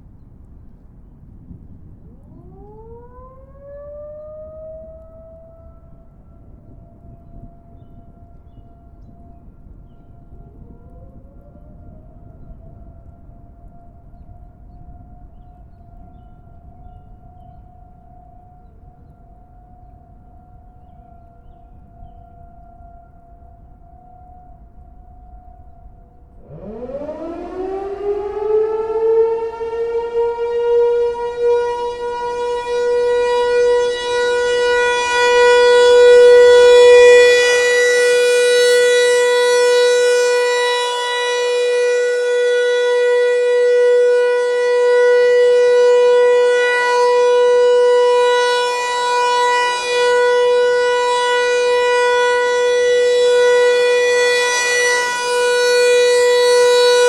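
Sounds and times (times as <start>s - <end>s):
warning siren steady tone: 0.0s - 57.0s.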